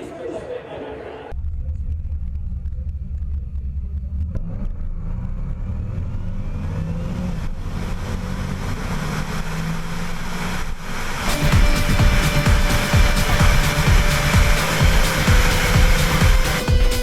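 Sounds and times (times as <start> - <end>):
car engine revving with supercharger whine: 1.4 - 16.6.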